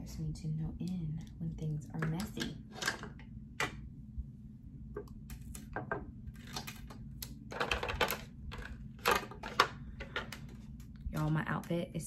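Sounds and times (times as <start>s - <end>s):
small hard objects clattering: 7.5s - 11.6s.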